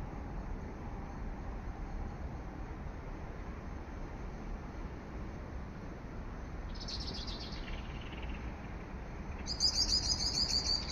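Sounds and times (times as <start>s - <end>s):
low outdoor background noise: 0.0s - 10.9s
small bird chirping: 6.7s - 10.9s.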